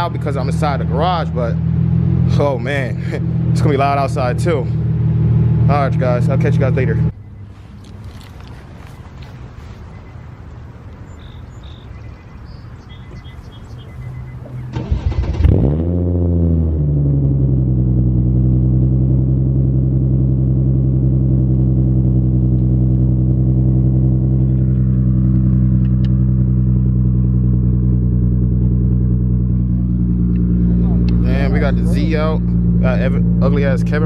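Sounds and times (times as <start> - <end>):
car engine idling: 0.0 - 34.0
short electronic beeps: 9.8 - 10.4
car engine cranking and starting: 13.0 - 34.0.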